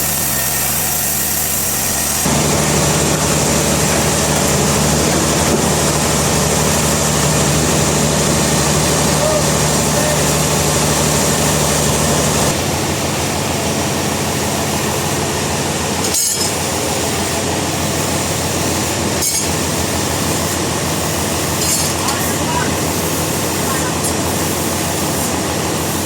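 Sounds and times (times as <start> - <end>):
loud mechanical rattle: 0.0 - 26.0
machinery engine hum: 1.8 - 26.0.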